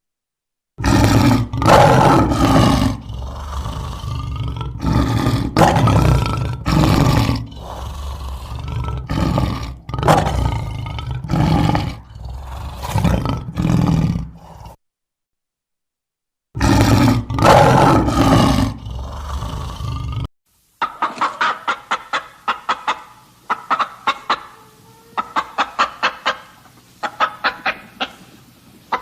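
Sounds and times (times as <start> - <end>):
large animal roaring: 0.8 - 14.8, 16.6 - 20.3.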